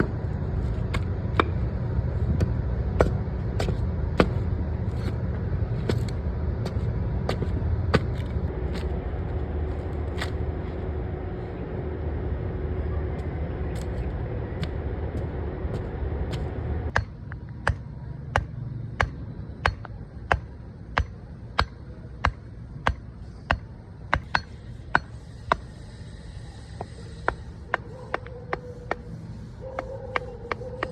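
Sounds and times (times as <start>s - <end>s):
low rumble: 0.0s - 19.4s.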